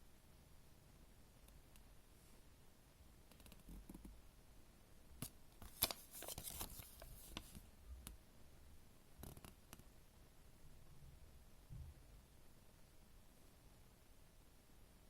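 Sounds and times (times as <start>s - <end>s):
wrapper crinkling and rustling: 5.7s - 7.6s.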